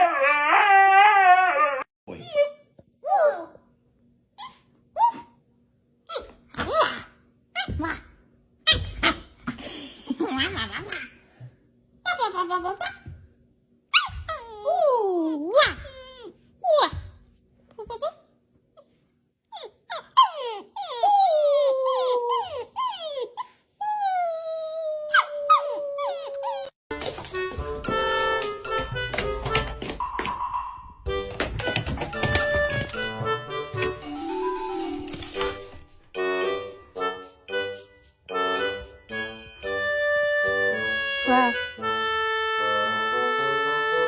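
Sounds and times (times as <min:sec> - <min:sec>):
dog howling: 0:00.0 - 0:01.9
dog whining: 0:19.5 - 0:26.8.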